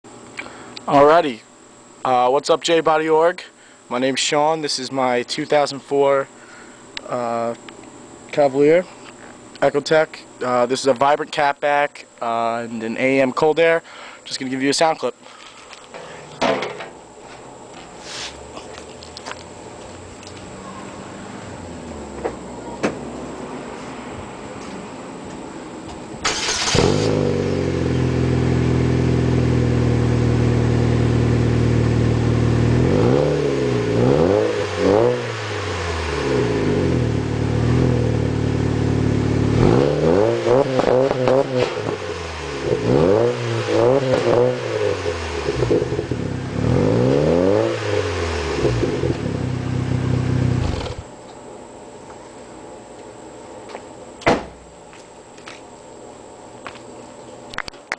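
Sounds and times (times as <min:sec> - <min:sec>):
car engine idling and revving: 0:20.0 - 0:24.4, 0:26.3 - 0:51.1
car engine starting: 0:26.2 - 0:51.1.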